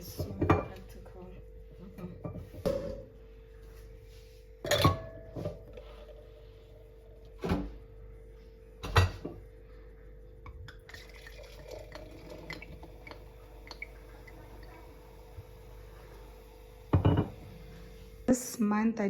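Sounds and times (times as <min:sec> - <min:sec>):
faint steady hum: 0:00.0 - 0:19.0
liquid pouring into a glass: 0:10.7 - 0:18.2
glass bottle knocking glassware: 0:16.9 - 0:17.4.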